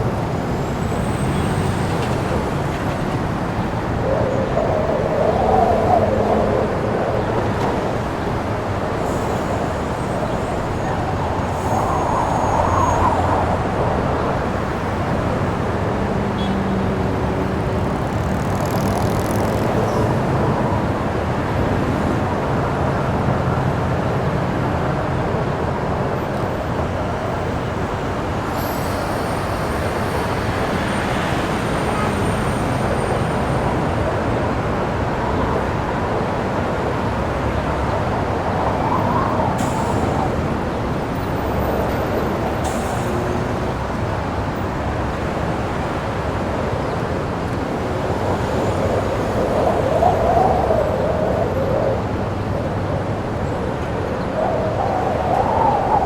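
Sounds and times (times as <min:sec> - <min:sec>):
drone propellers rushing: 0:00.8 - 0:19.8.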